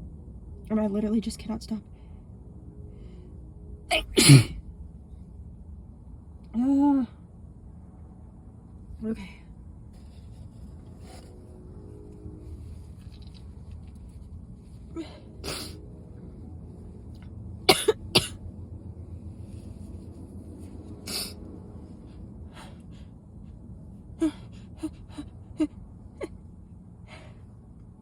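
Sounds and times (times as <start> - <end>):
woman sneezing: 3.9 - 4.6.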